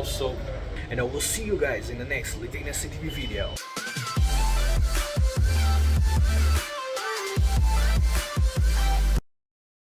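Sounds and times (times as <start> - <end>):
electronic dance music: 3.6 - 9.2.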